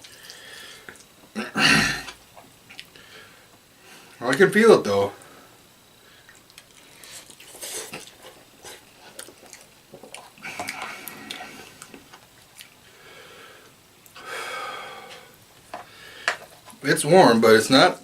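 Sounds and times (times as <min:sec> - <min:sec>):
breathing: 0:00.0 - 0:01.0, 0:03.0 - 0:04.2, 0:12.9 - 0:16.5.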